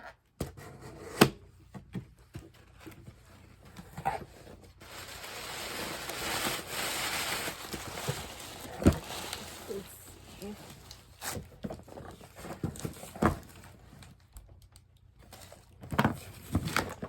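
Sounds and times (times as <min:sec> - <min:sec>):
packaging rustling: 0:02.8 - 0:14.2.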